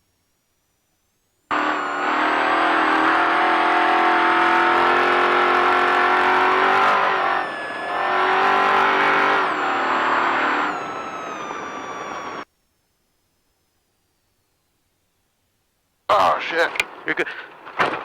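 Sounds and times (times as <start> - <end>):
race vehicle engine revving: 1.5 - 12.4.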